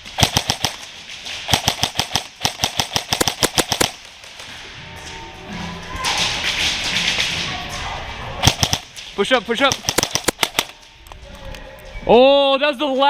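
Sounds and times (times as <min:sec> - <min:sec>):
airsoft guns firing: 0:00.0 - 0:04.5, 0:08.4 - 0:09.0, 0:09.6 - 0:10.8.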